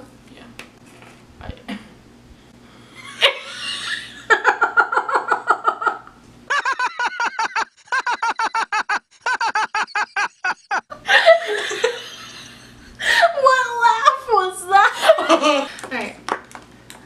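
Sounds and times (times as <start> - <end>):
person laughing uncontrollably: 3.1 - 13.3.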